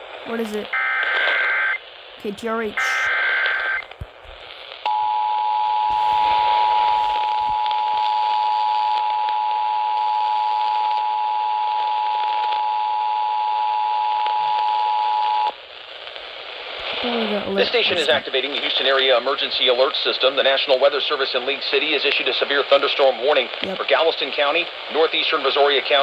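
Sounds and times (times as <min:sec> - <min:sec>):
radio static hiss: 0:00.0 - 0:04.8, 0:05.7 - 0:07.7, 0:15.7 - 0:26.0.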